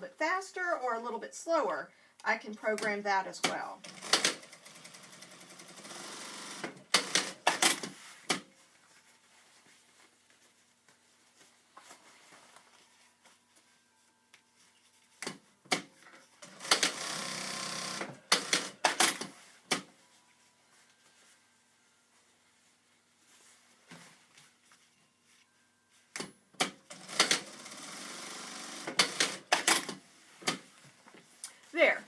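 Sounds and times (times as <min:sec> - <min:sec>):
sewing machine stitching: 0:03.8 - 0:07.9, 0:16.4 - 0:19.3, 0:26.9 - 0:30.0.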